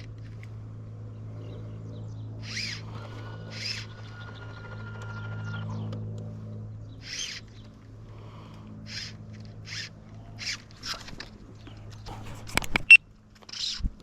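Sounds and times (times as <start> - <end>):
electric trolling motor humming: 0.0 - 13.8.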